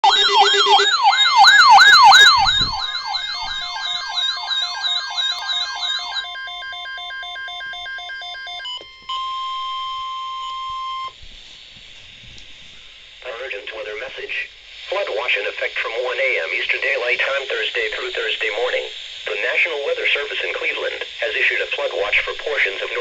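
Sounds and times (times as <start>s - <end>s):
steady alert tone: 0.0s - 9.8s
yelping siren: 0.0s - 11.1s
alarm tones: 0.0s - 11.2s
pulsed beeping tones: 0.0s - 11.2s.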